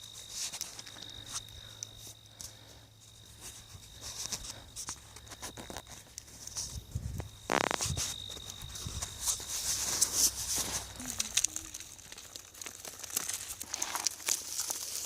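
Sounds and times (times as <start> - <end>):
footsteps crunching on gravel: 3.1 - 15.0.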